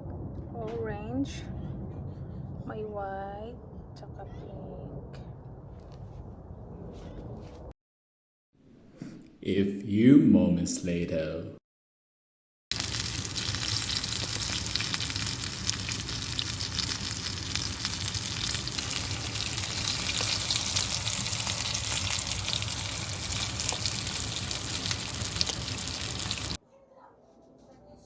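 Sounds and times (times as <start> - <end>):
fish sizzling in hot oil: 12.7 - 26.6.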